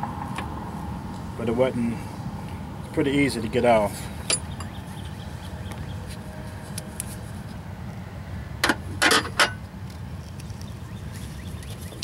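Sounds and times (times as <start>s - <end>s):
metal wrench clinking: 4.3s - 4.8s.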